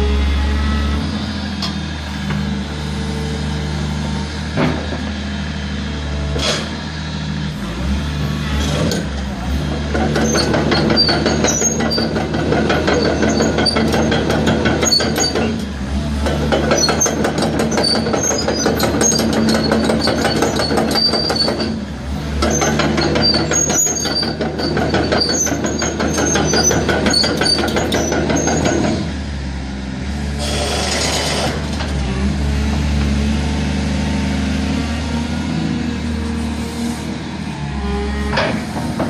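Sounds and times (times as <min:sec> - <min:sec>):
excavator diesel engine running: 0:00.0 - 0:39.0
metallic track clatter and squeaks: 0:09.8 - 0:29.1, 0:30.4 - 0:32.0, 0:37.8 - 0:39.0.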